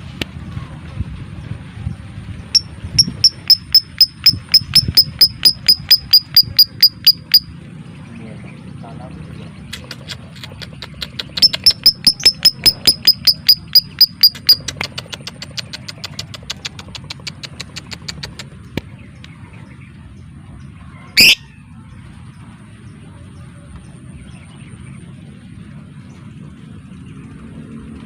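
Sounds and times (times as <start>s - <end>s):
lovebird rapid chipping call: 2.6s - 7.5s, 9.6s - 19.3s, 21.2s - 21.4s.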